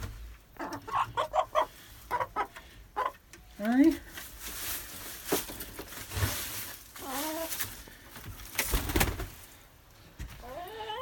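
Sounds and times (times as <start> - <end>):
rustling crinkling handling noise: 3.6 - 9.5.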